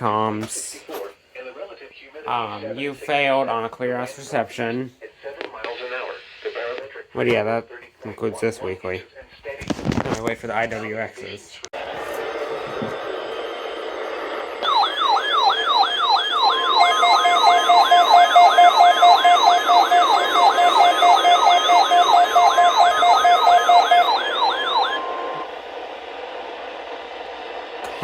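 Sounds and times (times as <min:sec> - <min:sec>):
siren-like falling sweeps: 0:11.8 - 0:27.6
steady warning alarm tone: 0:12.2 - 0:25.6
rapid beeping: 0:13.0 - 0:25.5.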